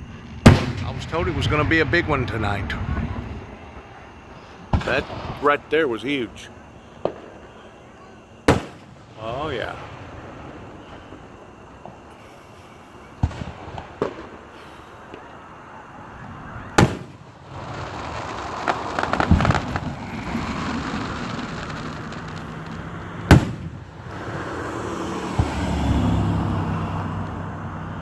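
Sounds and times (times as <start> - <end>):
firework shells booming: 0.3 - 27.4
crackling firework pops: 0.4 - 1.5, 4.7 - 5.4, 7.0 - 7.5, 8.5 - 9.0, 13.1 - 15.4, 16.5 - 24.5, 25.2 - 27.4.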